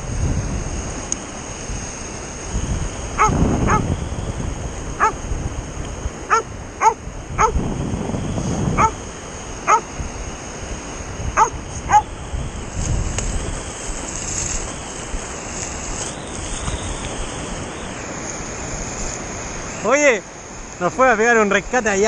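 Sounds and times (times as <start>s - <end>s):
dog barking: 3.2s - 3.9s, 6.3s - 7.6s, 8.8s - 9.0s, 9.7s - 9.9s, 11.4s - 12.1s.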